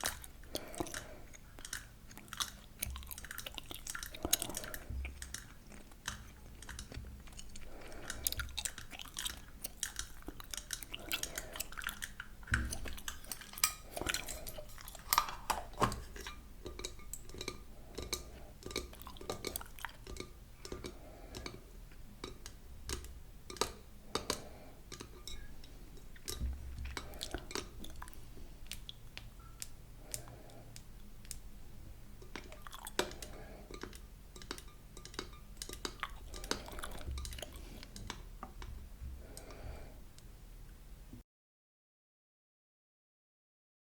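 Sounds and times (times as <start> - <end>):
gum chewing clicks and smacks: 0.0 - 15.8, 17.2 - 21.6, 26.1 - 31.4, 32.3 - 38.2.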